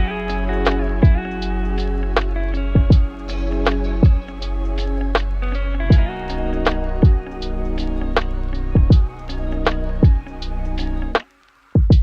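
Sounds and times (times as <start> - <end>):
deep kick drums: 0.0 - 1.4, 2.2 - 4.4, 5.9 - 6.2, 7.0 - 7.4, 8.7 - 9.2, 10.0 - 10.4, 11.8 - 12.0
electronic music beat: 0.0 - 12.0.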